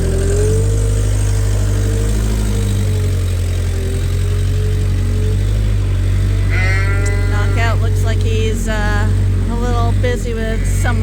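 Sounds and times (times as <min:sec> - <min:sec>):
machine humming: 0:00.0 - 0:11.0.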